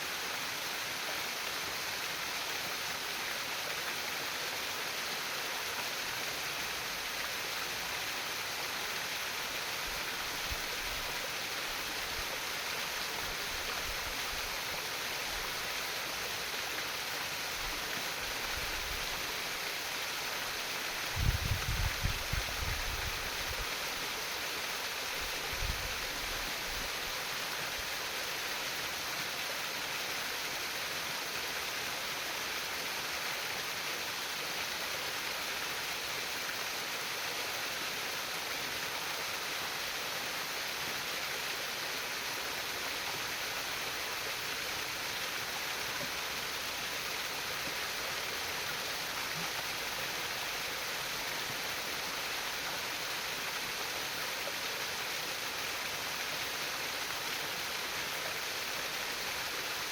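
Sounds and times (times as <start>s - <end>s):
stream of running water: 0.0s - 59.9s.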